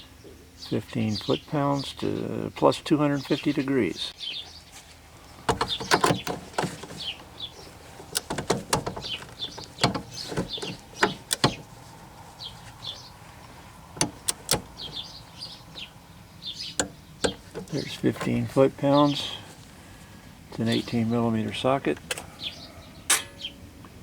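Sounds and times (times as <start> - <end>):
faint birds chirping: 0.0 - 24.0
torque wrench metallic clicks: 8.0 - 11.7, 14.0 - 15.1.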